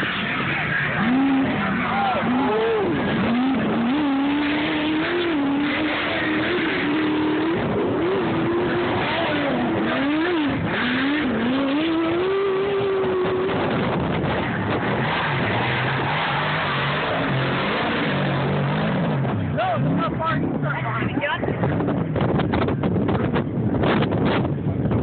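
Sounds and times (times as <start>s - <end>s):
race vehicle engine running hard: 0.0s - 25.0s.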